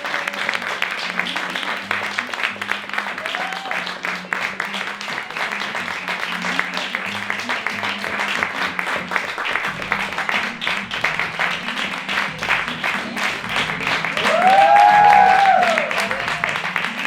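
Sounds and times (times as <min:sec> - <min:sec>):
audience applauding: 0:00.0 - 0:17.0
music playing: 0:00.0 - 0:17.0
whistle or cheer: 0:03.1 - 0:04.0, 0:14.1 - 0:16.7.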